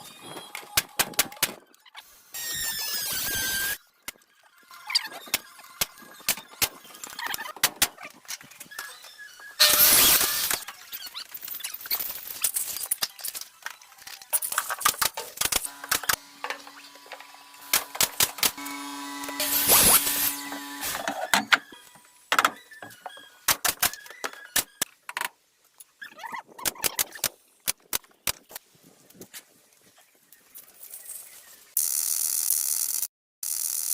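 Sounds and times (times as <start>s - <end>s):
motor humming: 15.7s - 21.4s
burst of harsh noise: 17.6s - 21.1s.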